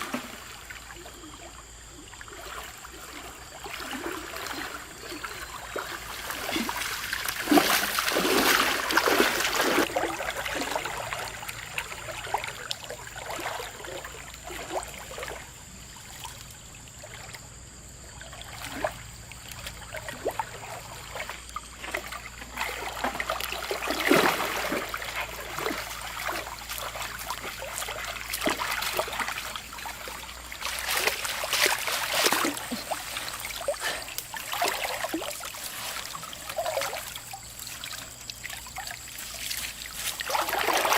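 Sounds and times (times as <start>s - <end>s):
water splashing: 0.0s - 17.4s, 18.1s - 40.9s
river water running over rocks: 4.2s - 14.2s, 23.3s - 40.9s.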